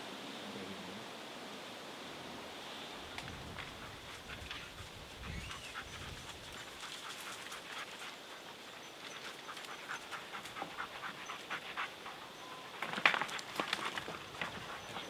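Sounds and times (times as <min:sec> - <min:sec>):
rustle: 0:00.0 - 0:15.0
dog panting: 0:03.6 - 0:15.0.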